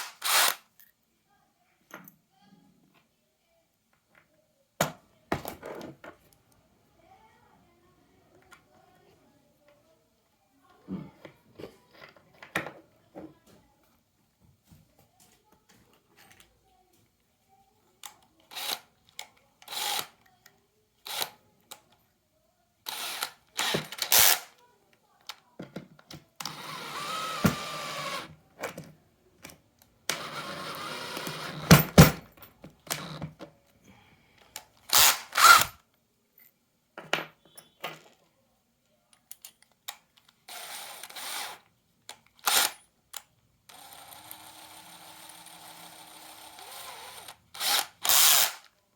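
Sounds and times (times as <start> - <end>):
cordless drill running: 0.0 - 0.6, 19.7 - 20.1, 21.1 - 21.3, 22.9 - 24.5, 26.4 - 28.3, 30.1 - 32.0, 34.9 - 35.7, 40.5 - 41.6, 43.7 - 48.7
clicks and knocks of handling: 39.1 - 40.4.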